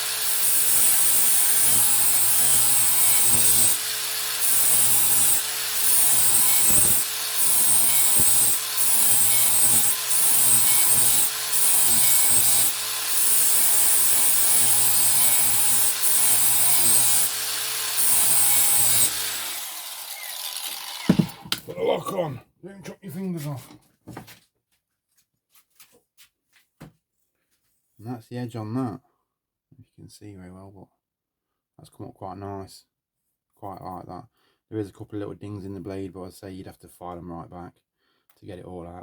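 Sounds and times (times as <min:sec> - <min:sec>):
angle grinder grinding steel: 0:00.0 - 0:21.7.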